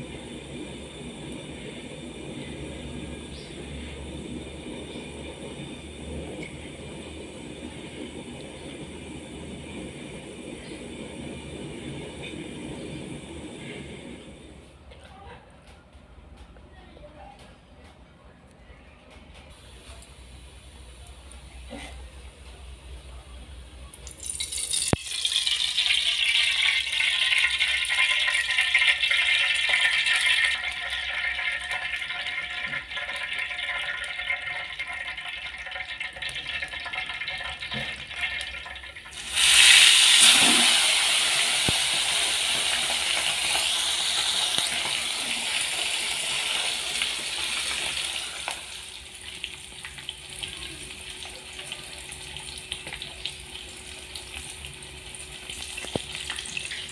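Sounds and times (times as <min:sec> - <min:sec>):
tap water running into sink: 0:33.9 - 0:54.6, 0:55.7 - 0:56.9.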